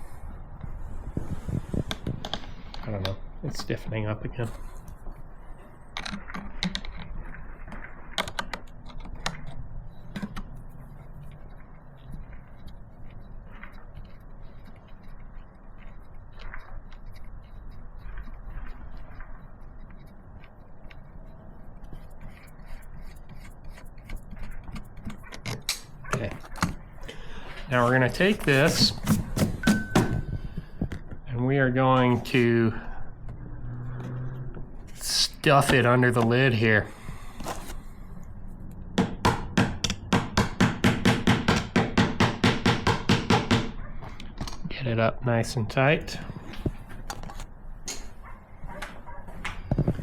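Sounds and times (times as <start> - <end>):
nut clicking and scraping on rod: 12.1 - 26.8
rapid clicking of tool tightening nut: 21.7 - 25.8
louder metal knocks: 29.4 - 30.3.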